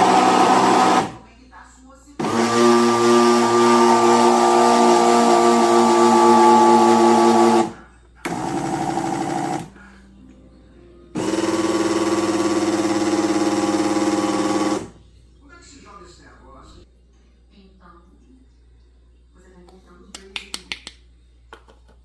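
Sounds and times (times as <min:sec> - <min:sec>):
blender motor running: 0:00.0 - 0:01.2, 0:02.2 - 0:09.7, 0:11.2 - 0:15.0.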